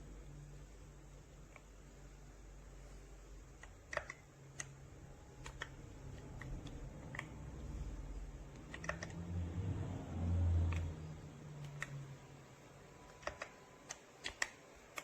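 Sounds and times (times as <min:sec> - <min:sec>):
keyboard key clicks: 0:03.6 - 0:04.8, 0:05.4 - 0:07.4, 0:08.5 - 0:09.2, 0:13.0 - 0:15.0
low rumble: 0:05.0 - 0:12.4.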